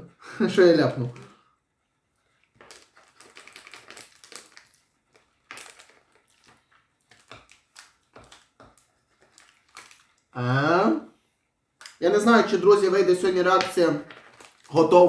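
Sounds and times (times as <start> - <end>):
plastic wrapper crinkling: 2.2 - 10.4, 11.7 - 15.0.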